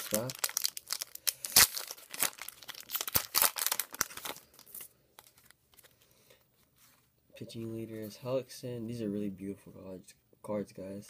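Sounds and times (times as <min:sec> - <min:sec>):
wrapper tearing and crinkling: 0:00.0 - 0:05.5.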